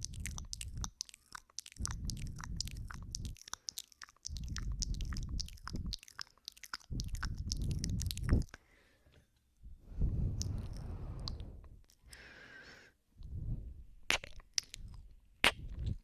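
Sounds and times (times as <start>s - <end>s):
tongue clicks: 0.0s - 8.6s, 10.3s - 12.3s, 14.1s - 16.0s
wet lip smacks: 0.0s - 8.6s, 10.3s - 12.2s, 14.0s - 16.0s
breath rumble on microphone: 1.8s - 3.4s, 4.3s - 6.0s, 6.8s - 8.6s, 9.6s - 11.8s, 13.2s - 14.0s, 14.7s - 16.0s.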